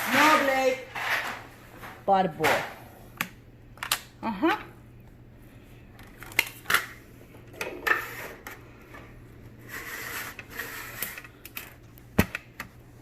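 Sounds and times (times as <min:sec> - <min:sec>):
rustling scrape: 0:07.8 - 0:08.5, 0:09.6 - 0:11.3.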